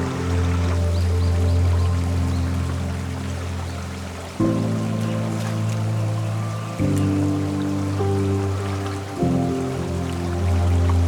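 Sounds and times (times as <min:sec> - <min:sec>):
slow sustained chords: 0:00.0 - 0:11.0.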